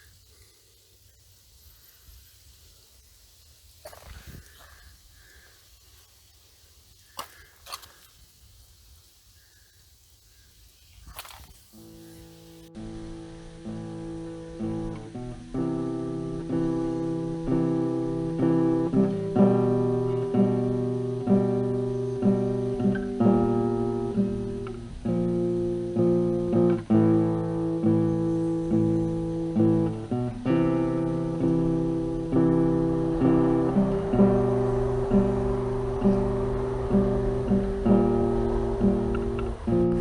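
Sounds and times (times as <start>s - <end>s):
acoustic guitar chords: 11.8s - 40.0s.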